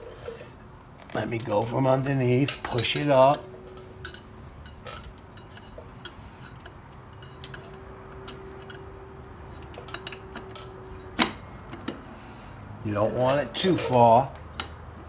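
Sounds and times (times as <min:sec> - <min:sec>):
light metallic clicks and taps: 0:09.5 - 0:12.0, 0:13.6 - 0:14.8.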